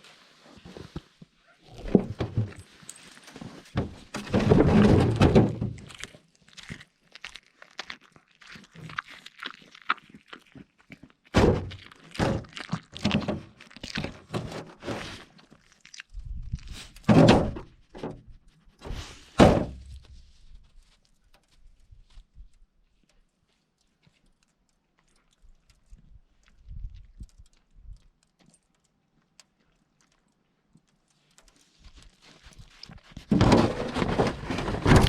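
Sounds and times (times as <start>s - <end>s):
dog chewing food: 5.7s - 17.1s.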